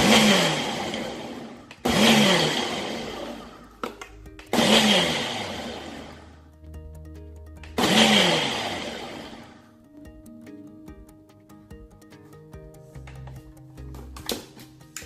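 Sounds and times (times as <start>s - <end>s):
blender motor pulsing: 0.0s - 6.4s, 7.6s - 9.7s.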